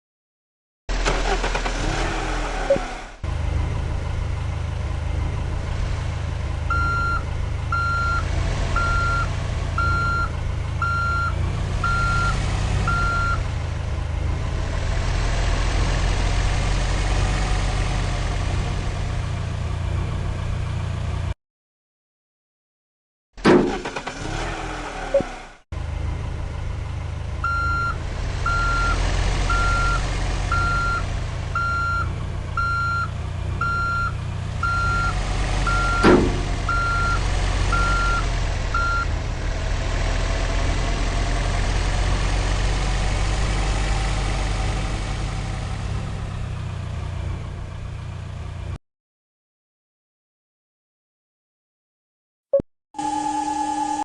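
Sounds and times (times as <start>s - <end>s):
heavy vehicle engine running: 0.9s - 21.4s, 23.4s - 48.8s
reversing alarm beeping: 27.4s - 31.0s, 31.6s - 35.1s, 35.7s - 39.1s, 53.0s - 54.0s.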